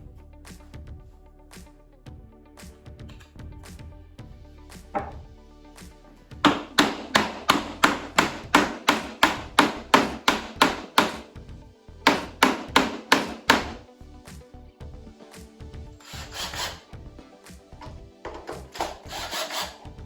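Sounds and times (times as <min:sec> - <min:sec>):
hammer blows on wood: 0:06.4 - 0:11.2, 0:12.1 - 0:13.8.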